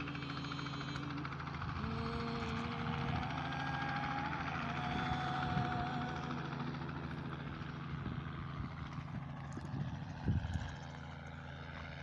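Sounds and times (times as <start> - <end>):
woman singing a hymn: 0.0 - 7.2
low mechanical hum: 0.0 - 12.0.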